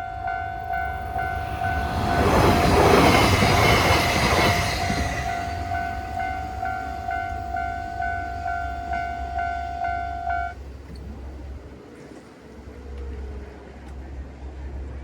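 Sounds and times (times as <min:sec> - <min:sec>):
passing train: 0:00.0 - 0:15.0.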